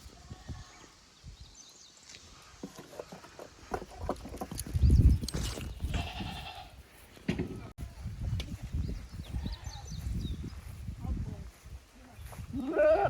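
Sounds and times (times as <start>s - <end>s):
wind buffeting microphone: 4.3s - 6.7s, 7.4s - 13.0s
goat bleating: 5.9s - 6.8s, 12.5s - 13.0s.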